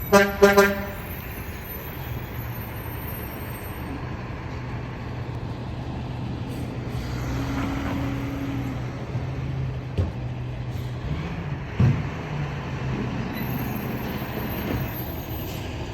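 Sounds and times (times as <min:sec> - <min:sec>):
garbage truck engine running: 0:00.8 - 0:15.9
higher steady tone: 0:06.8 - 0:09.7.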